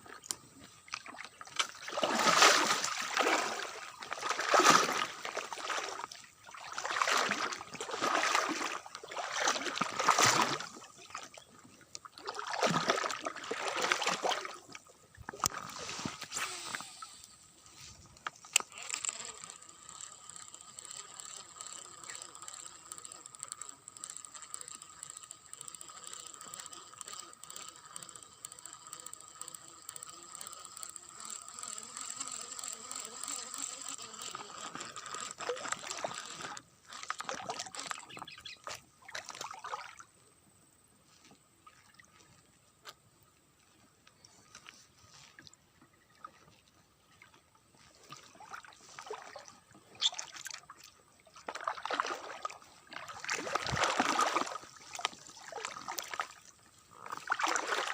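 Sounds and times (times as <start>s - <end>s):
fishing reel whirring: 0.0s - 41.4s, 47.3s - 57.9s
short uneven noise bursts: 15.6s - 36.9s.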